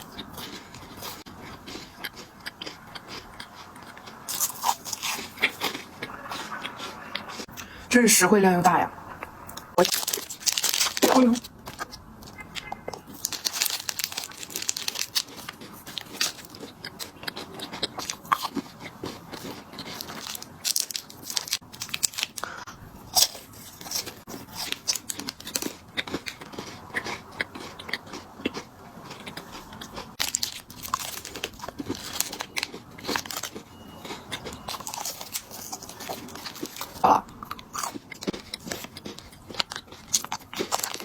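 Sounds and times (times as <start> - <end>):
crunching and chewing biscuits: 0.0 - 7.9, 9.1 - 41.0.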